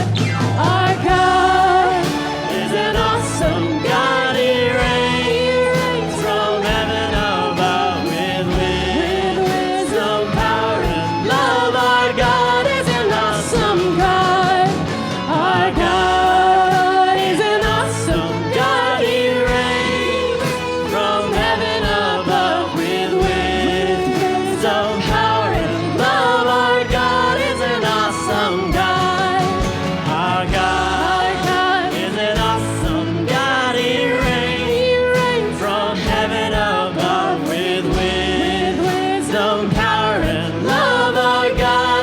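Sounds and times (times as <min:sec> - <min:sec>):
band with steady drum beat: 0:00.0 - 0:42.0
worship song singing: 0:00.0 - 0:42.0.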